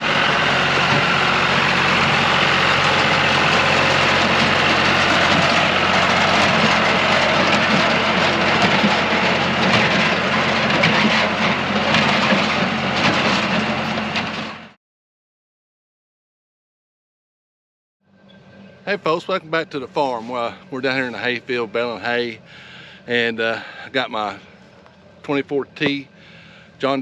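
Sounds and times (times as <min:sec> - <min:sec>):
tractor engine running: 0:00.0 - 0:14.8, 0:18.2 - 0:27.0
baler rattling and knocking: 0:00.4 - 0:14.6.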